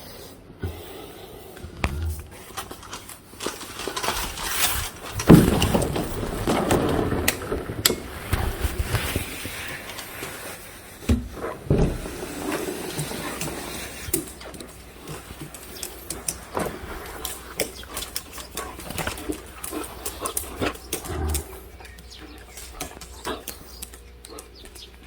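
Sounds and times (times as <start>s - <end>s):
dogs making urgent vocal sound: 11.4s - 25.0s.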